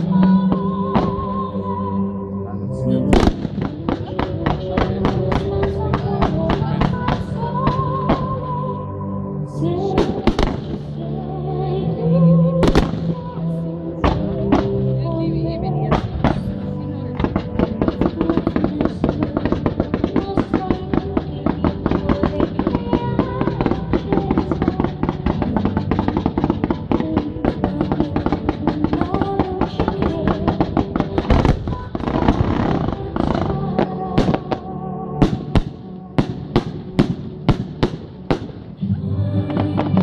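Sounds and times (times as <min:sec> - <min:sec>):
music: 0:00.0 - 0:40.0
fireworks crackling and banging: 0:03.1 - 0:08.5, 0:09.8 - 0:11.0, 0:12.6 - 0:13.3, 0:15.9 - 0:40.0.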